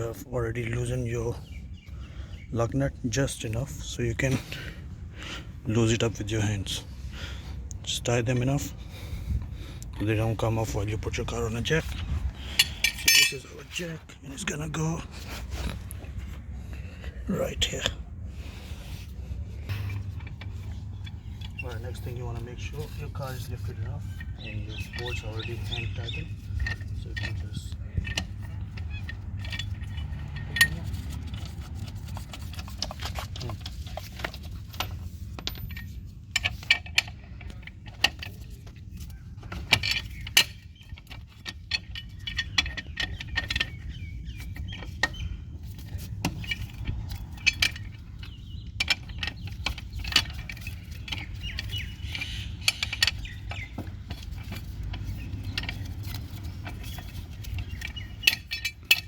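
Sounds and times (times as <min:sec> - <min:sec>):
metallic clicks of wheel nuts: 0:07.4 - 0:15.0, 0:19.6 - 0:59.0.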